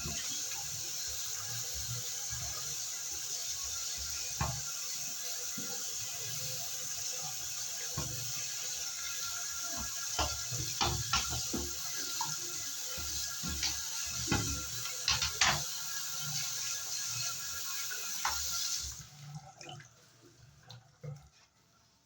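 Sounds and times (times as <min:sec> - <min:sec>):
water spraying: 0:00.0 - 0:19.0
knocks and clatters: 0:13.0 - 0:15.7.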